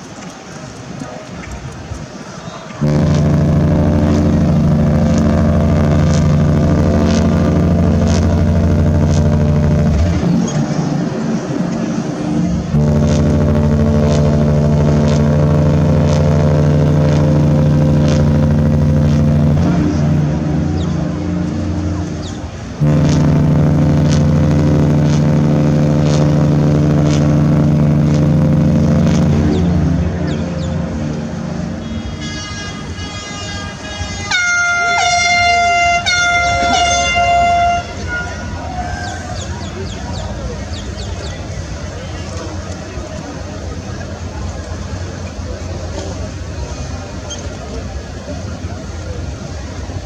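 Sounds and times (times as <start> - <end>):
deep ship horn blast: 2.8 - 38.8.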